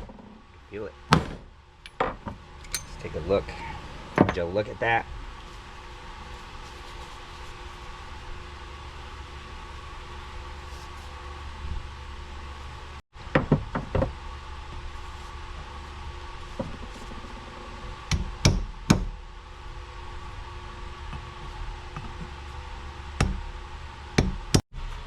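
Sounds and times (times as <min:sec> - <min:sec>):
steady low hum: 0:00.0 - 0:25.0
hammer striking metal: 0:02.7 - 0:03.0.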